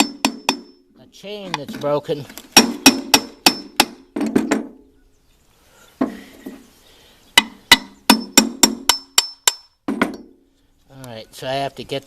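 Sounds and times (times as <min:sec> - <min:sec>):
hammer tapping on metal shaft: 0:07.4 - 0:10.2.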